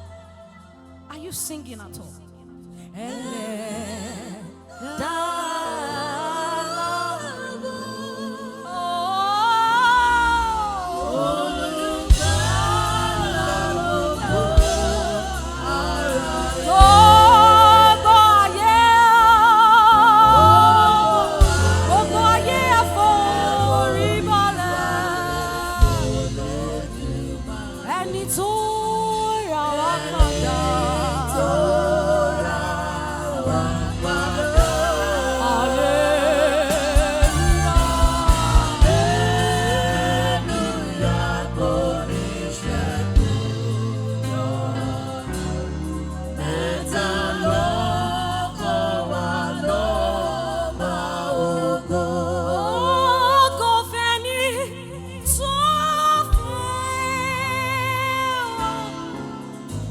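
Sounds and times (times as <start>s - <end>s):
lead singer with vibrato: 2.7s - 59.9s
choir voices singing: 2.8s - 59.9s
sustained low instrumental chords: 10.0s - 52.6s.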